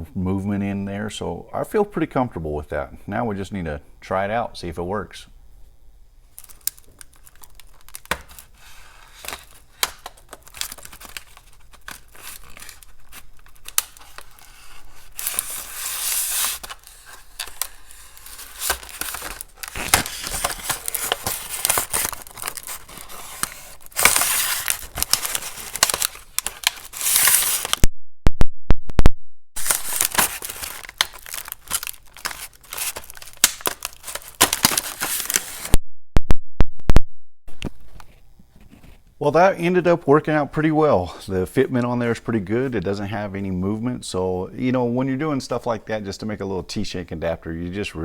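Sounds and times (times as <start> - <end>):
packaging tearing and crinkling: 6.3 - 27.9, 29.6 - 35.8.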